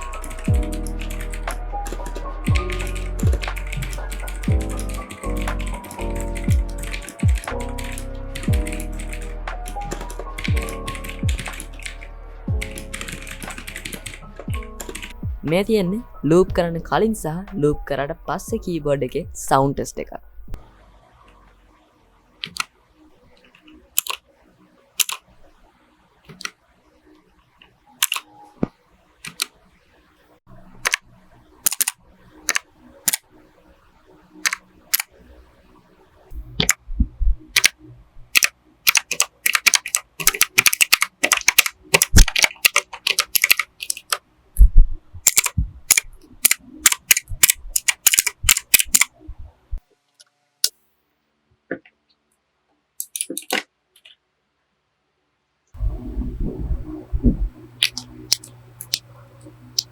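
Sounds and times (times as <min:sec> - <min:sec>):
mechanical keyboard clicking: 0:00.0 - 0:15.2, 0:22.4 - 0:22.7, 0:23.5 - 0:24.2, 0:25.0 - 0:25.2, 0:26.3 - 0:26.6, 0:28.0 - 0:28.3, 0:29.2 - 0:29.6, 0:30.8 - 0:31.0, 0:31.6 - 0:33.2, 0:34.4 - 0:35.1, 0:37.5 - 0:44.2, 0:45.2 - 0:49.1, 0:53.0 - 0:53.7, 0:57.8 - 0:59.0.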